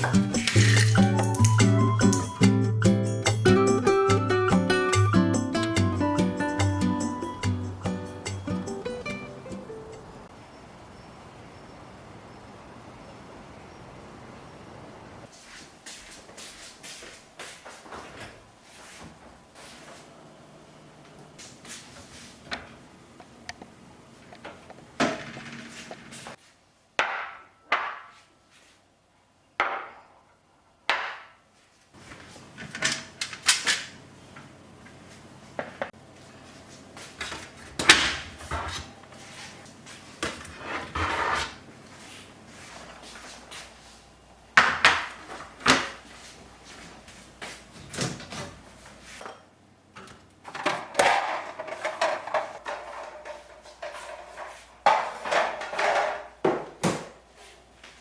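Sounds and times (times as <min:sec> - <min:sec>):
containers knocking and clattering: 0:00.0 - 0:02.4, 0:50.4 - 0:57.2.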